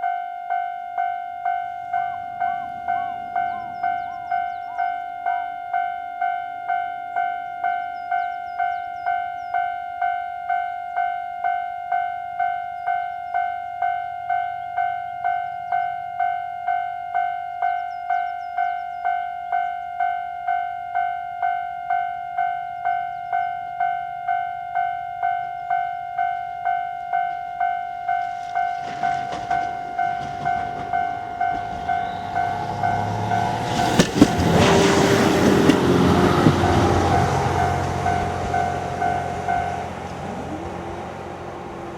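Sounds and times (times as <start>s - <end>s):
level-crossing warning bell: 0.0s - 41.9s
approaching train rumble: 0.9s - 9.7s, 19.9s - 41.9s.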